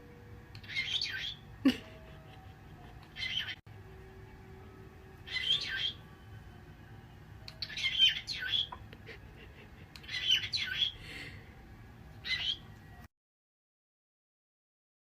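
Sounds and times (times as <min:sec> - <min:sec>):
parrot chirping and squawking: 0:00.6 - 0:01.5, 0:03.0 - 0:03.6, 0:05.2 - 0:06.0, 0:07.6 - 0:08.8, 0:10.0 - 0:11.0, 0:12.2 - 0:12.7.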